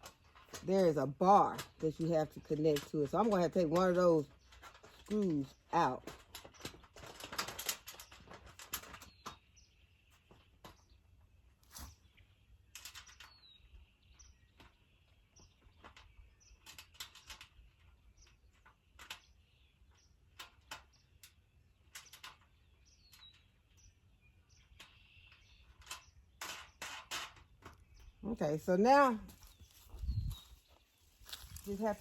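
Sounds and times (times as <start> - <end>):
bird chirping: 7.9 - 26.8, 27.4 - 32.0.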